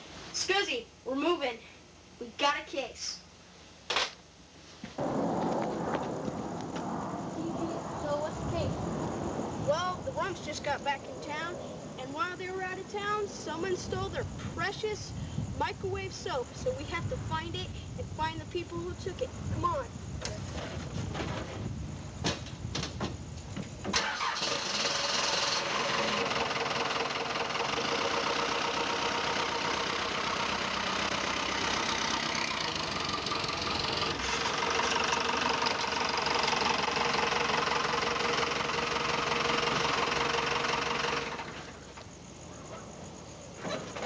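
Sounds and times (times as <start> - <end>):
car engine starting and running: 23.9 - 41.9.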